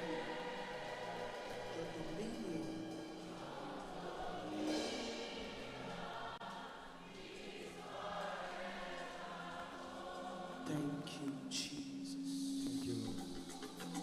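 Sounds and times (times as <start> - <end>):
group softly singing: 0.0 - 14.0
sustained musical accompaniment: 0.0 - 14.0.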